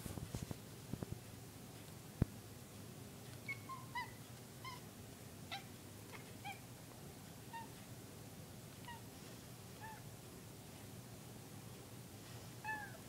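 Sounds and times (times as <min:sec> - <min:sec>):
cat chirping: 0:03.4 - 0:04.8, 0:05.5 - 0:06.6, 0:07.5 - 0:07.8, 0:08.8 - 0:09.1, 0:09.8 - 0:10.0, 0:12.6 - 0:13.0.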